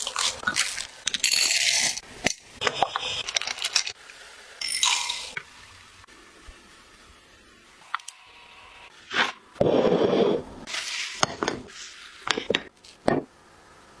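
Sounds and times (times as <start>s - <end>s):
kitchen utensils clinking: 2.6s - 4.0s, 4.6s - 5.4s.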